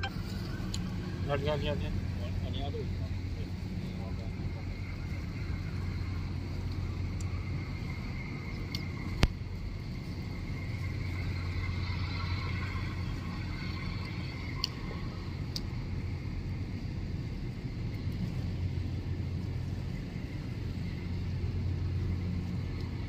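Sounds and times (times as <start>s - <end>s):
low engine rumble: 0.0s - 23.0s.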